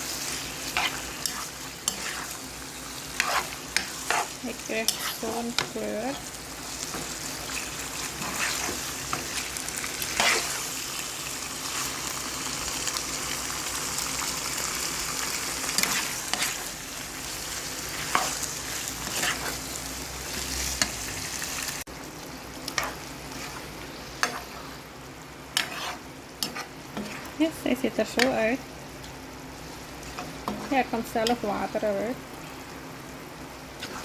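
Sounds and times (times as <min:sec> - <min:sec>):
squid sizzling in a pan: 0:00.0 - 0:34.0
spoon scraping a pan: 0:00.1 - 0:10.8, 0:15.6 - 0:16.7, 0:17.9 - 0:21.0, 0:22.7 - 0:24.8, 0:25.6 - 0:27.5, 0:30.1 - 0:31.6, 0:33.8 - 0:34.0.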